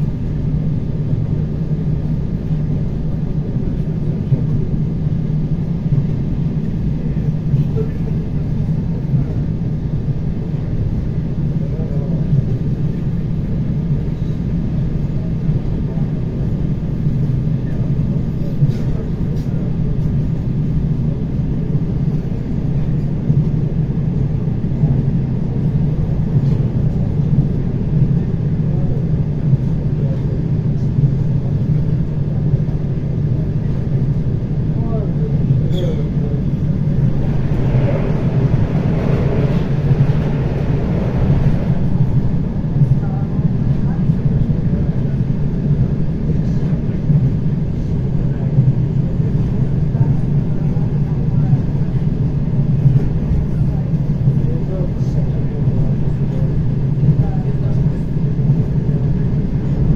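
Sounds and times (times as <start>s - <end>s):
train rumbling: 0.0s - 59.9s.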